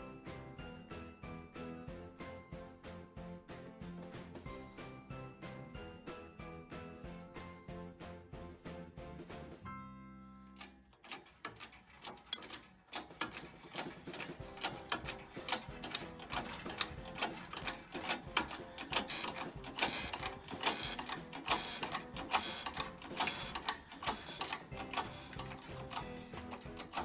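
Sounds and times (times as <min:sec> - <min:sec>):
rapid mechanical clicking: 0:10.6 - 0:27.0.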